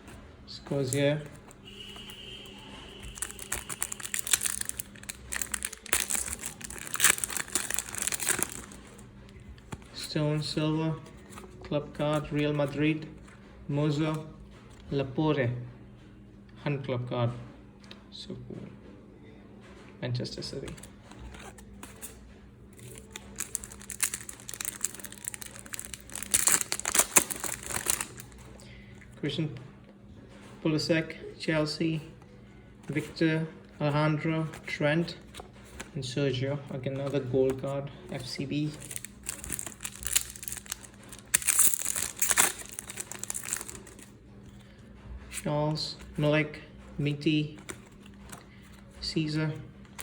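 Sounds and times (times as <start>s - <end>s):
wrapper crinkling and tearing: 3.0s - 9.4s, 21.1s - 28.5s, 38.6s - 44.2s.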